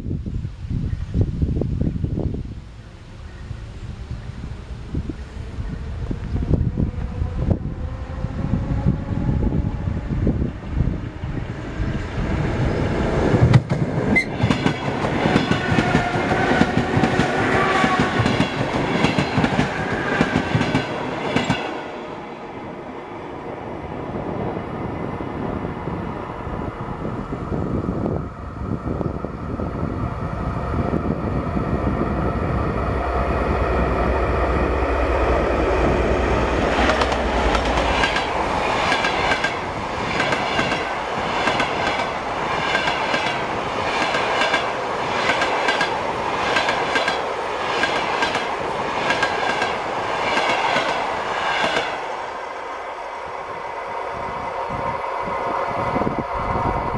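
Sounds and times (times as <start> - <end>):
train wheels knocking on rails: 13.4 - 21.7.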